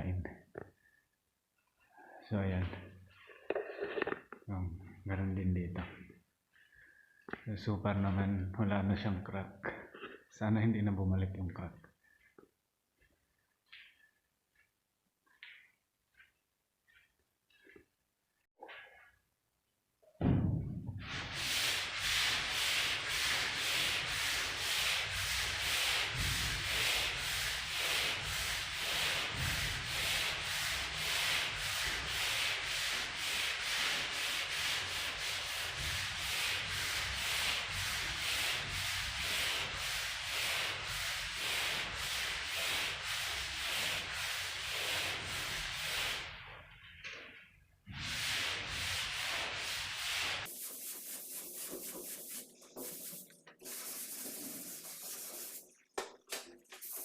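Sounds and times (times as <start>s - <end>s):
sandpaper scratching on drywall: 21.0s - 46.6s, 47.9s - 55.8s, 56.7s - 57.0s.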